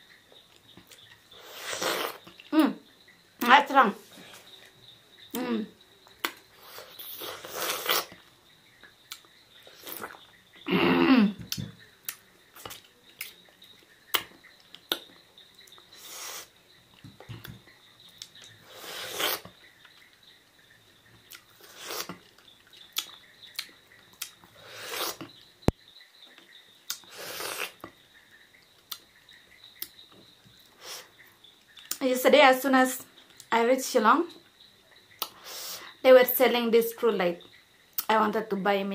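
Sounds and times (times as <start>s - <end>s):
person chewing: 0.8s - 2.5s, 6.1s - 8.2s, 9.1s - 10.2s, 11.5s - 15.1s, 18.2s - 20.0s, 21.3s - 25.3s, 26.9s - 27.9s
lip smacks: 6.1s - 8.2s, 9.1s - 10.2s, 11.4s - 13.4s, 14.1s - 15.1s, 21.3s - 25.3s, 26.9s - 27.9s, 28.8s - 29.1s, 31.8s - 32.0s, 35.2s - 35.8s.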